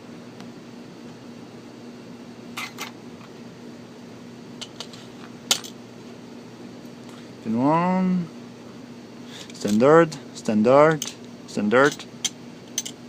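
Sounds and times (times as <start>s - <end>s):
steady low hum: 0.0s - 13.0s
metallic lock parts clicking: 11.8s - 13.0s.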